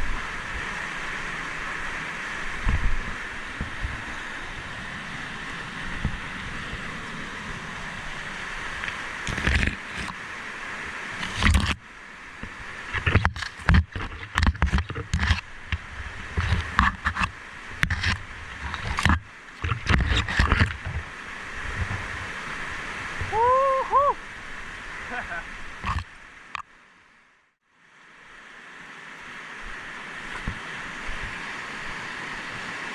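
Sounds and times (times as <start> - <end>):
rushing mountain river: 0.0 - 32.9.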